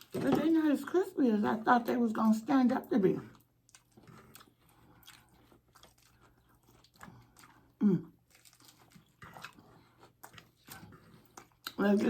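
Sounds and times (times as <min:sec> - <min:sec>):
chewing and biting crunchy food: 0:02.8 - 0:12.0.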